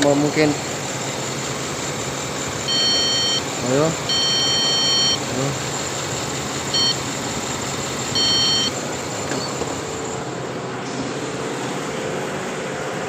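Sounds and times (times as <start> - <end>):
engine idling with misfire: 0.0 - 13.0
short electronic beep: 2.7 - 3.4, 4.1 - 5.2, 6.8 - 7.0, 8.2 - 8.8.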